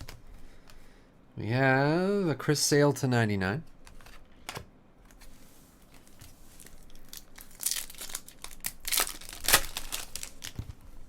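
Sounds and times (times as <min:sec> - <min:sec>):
foil wrapper crinkling and tearing: 0:06.6 - 0:10.7.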